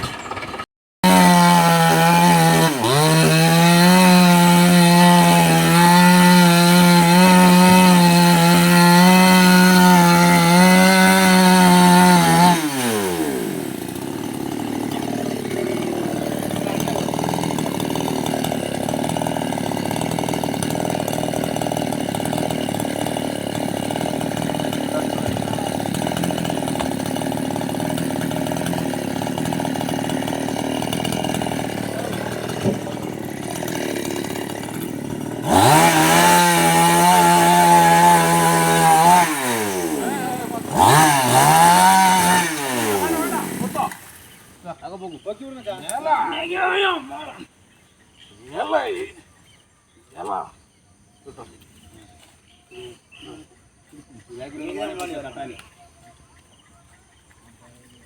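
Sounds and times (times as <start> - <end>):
chainsaw revving: 0.0 - 44.8.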